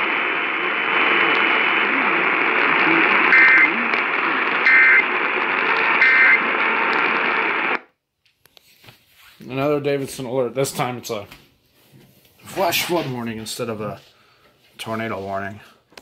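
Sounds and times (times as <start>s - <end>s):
radio static hiss: 0.0s - 7.9s.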